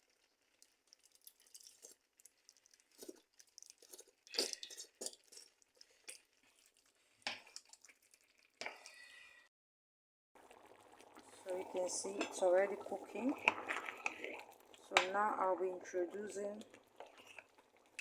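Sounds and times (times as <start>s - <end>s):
wet squishing of stirred tomatoes: 0.0s - 9.4s, 10.4s - 18.0s.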